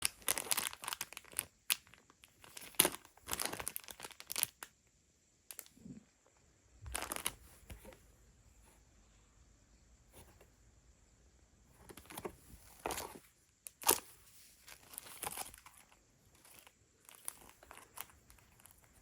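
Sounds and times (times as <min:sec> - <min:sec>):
packaging tearing and crinkling: 0:00.0 - 0:04.6, 0:12.8 - 0:18.9.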